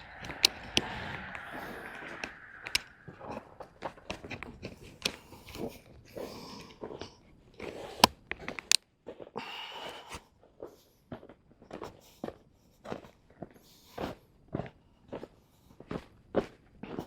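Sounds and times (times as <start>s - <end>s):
sharp click: 0.0s - 3.0s.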